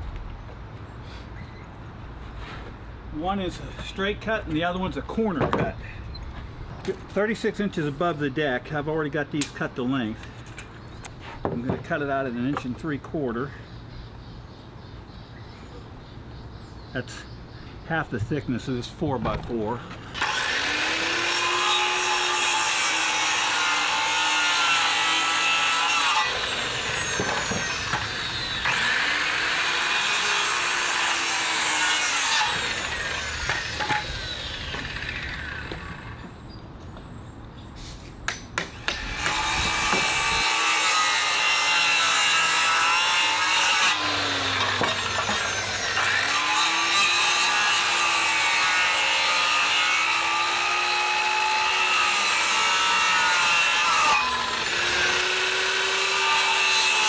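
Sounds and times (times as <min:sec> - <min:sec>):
power saw cutting wood: 0:20.0 - 0:36.3, 0:38.3 - 0:57.0.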